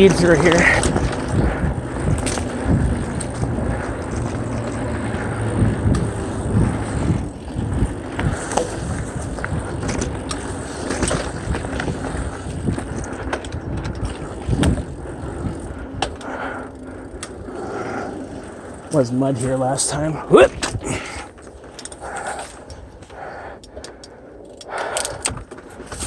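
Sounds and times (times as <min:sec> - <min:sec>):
bike thumps: 0:00.0 - 0:16.2
bike knocks and rattles: 0:00.0 - 0:23.1, 0:24.8 - 0:26.0
bike tyres rumbling on dirt: 0:00.0 - 0:23.5, 0:25.3 - 0:26.0.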